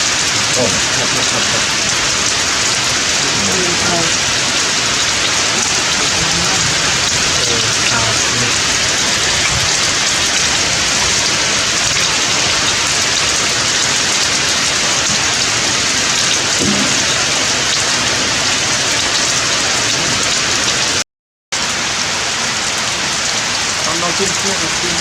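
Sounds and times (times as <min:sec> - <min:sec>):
heavy rain falling: 0:00.0 - 0:21.0, 0:21.6 - 0:25.0.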